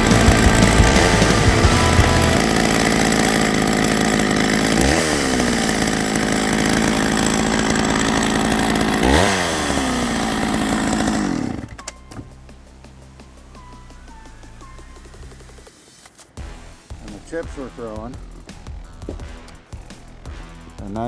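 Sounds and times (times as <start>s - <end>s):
chainsaw cutting wood: 0.0s - 12.1s.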